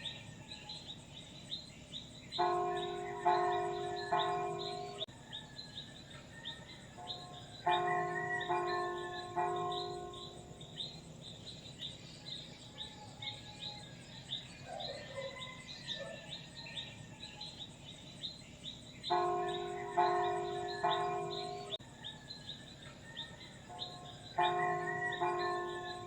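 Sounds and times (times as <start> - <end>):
birds chirping: 0.0 - 26.0
church bell ringing: 2.4 - 5.1, 7.0 - 11.1, 19.0 - 21.8, 23.7 - 26.0.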